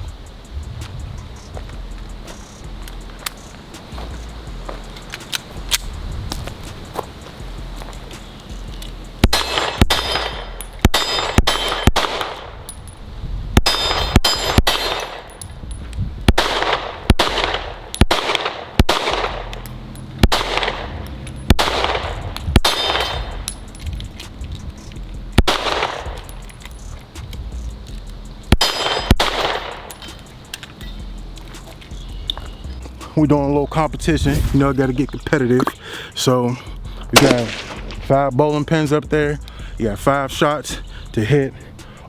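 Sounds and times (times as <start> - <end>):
pistol shots: 9.2 - 12.6, 13.6 - 15.4, 16.3 - 23.6, 25.4 - 26.4, 28.5 - 30.0, 37.2 - 38.1
steel targets clanging: 9.3 - 13.0, 13.7 - 15.8, 28.5 - 31.1.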